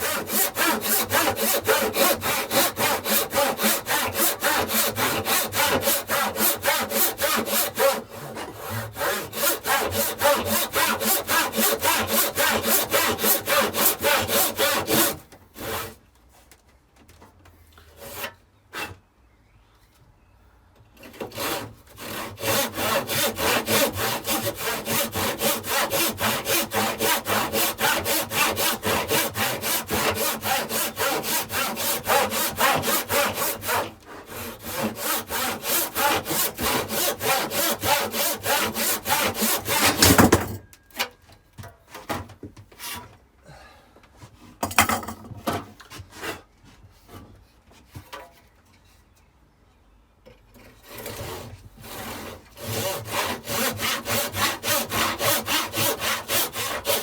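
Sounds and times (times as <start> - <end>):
handsaw cutting timber: 0.0 - 16.0, 21.0 - 40.4, 50.8 - 57.0
timber thump: 39.8 - 40.6.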